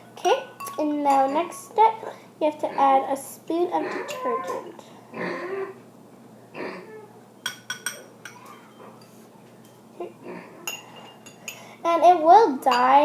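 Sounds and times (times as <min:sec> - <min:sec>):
spoon clinking against bowl: 0:00.3 - 0:01.5, 0:07.4 - 0:09.8, 0:10.7 - 0:11.7.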